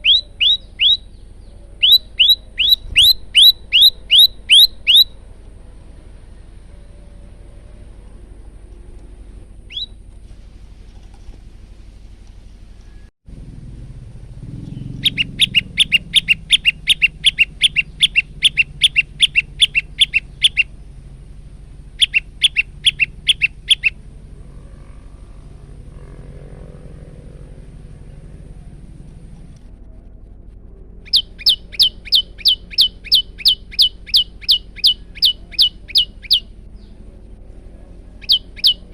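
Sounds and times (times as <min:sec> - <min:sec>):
bird chirping rapidly: 0:00.0 - 0:05.2, 0:09.6 - 0:10.0, 0:14.4 - 0:24.0, 0:31.0 - 0:37.0, 0:38.2 - 0:38.9.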